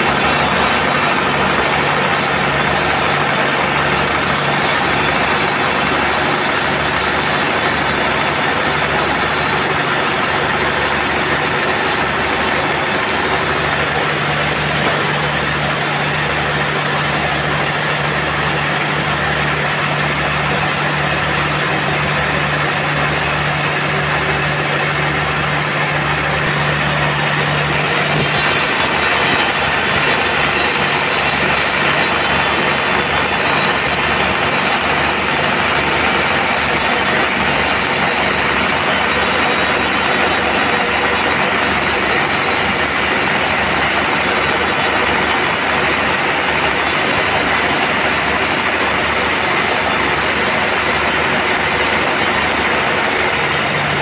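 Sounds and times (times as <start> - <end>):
band saw cutting log: 0.0 - 54.0.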